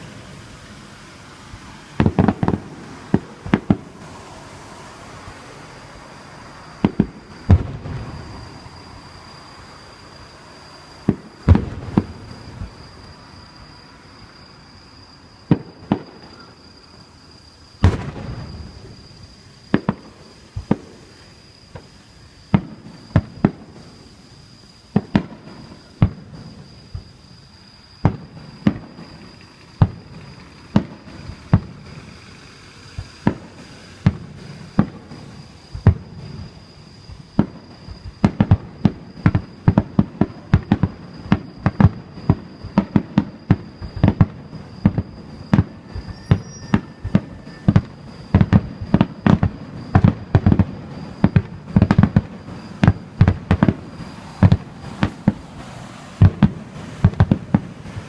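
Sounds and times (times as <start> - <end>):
fireworks bangs: 0.0 - 13.8, 15.4 - 17.0, 17.8 - 24.2, 24.9 - 27.3, 28.0 - 58.0
faint high-pitched tone: 12.3 - 17.7, 44.6 - 48.8.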